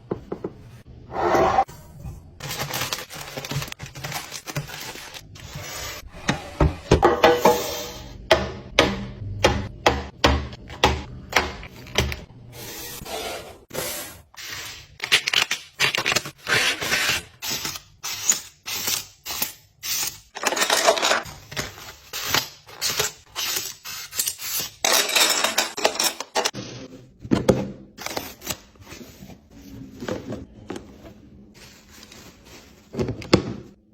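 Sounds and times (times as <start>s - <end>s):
packaging clicks and rustles: 2.4s - 5.3s.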